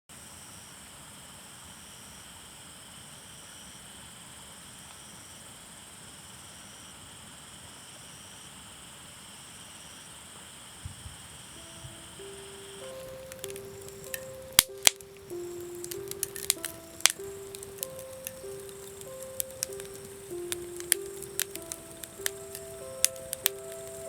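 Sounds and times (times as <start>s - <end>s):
insects trilling: 9.3s - 24.0s
pitched music notes: 11.6s - 24.0s.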